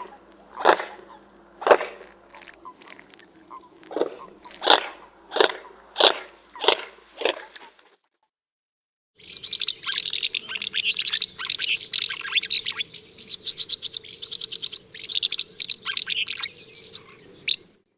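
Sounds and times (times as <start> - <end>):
bird calling: 0.0 - 7.8, 9.2 - 17.8.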